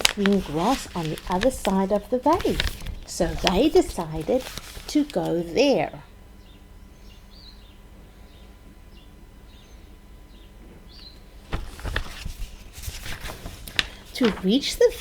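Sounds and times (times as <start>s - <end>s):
faint bird chirps: 6.4s - 11.2s.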